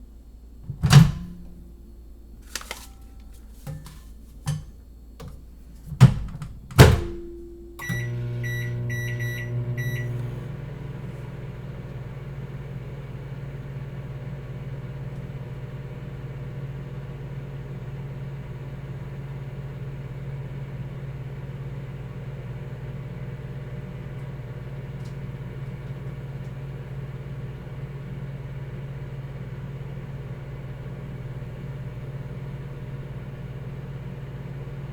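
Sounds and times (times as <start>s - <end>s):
microwave oven humming: 0.0s - 34.9s
microwave door shutting: 0.7s - 1.6s, 2.5s - 12.4s
short keypad beeps: 7.8s - 10.2s.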